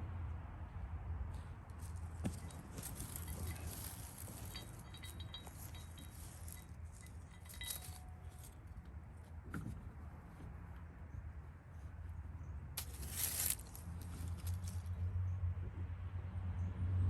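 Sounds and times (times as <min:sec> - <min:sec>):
steady low hum: 0:00.0 - 0:15.0
metal hardware clinking: 0:01.8 - 0:08.6.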